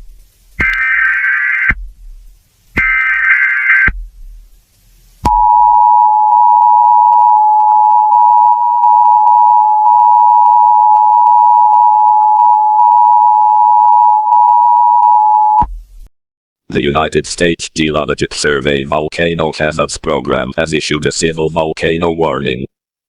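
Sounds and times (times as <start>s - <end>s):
digital header burst: 0.5s - 2.0s, 2.7s - 4.0s.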